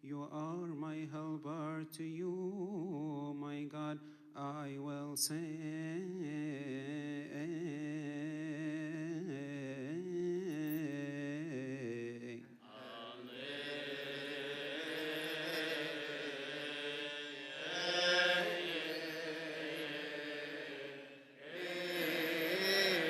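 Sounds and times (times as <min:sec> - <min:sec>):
man singing melismatic chant: 0:00.0 - 0:23.0
several voices chanting: 0:12.7 - 0:23.0.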